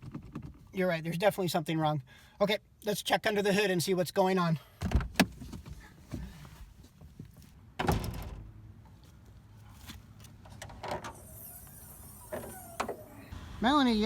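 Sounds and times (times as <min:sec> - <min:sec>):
car door thump: 0:04.8 - 0:05.4, 0:07.8 - 0:08.5.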